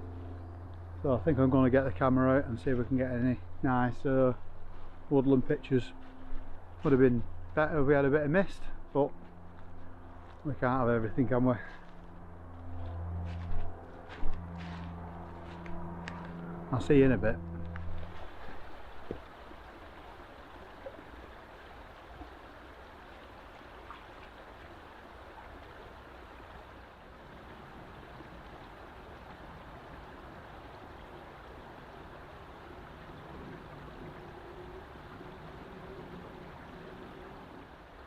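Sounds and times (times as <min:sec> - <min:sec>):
stream rushing: 0:09.0 - 0:38.0.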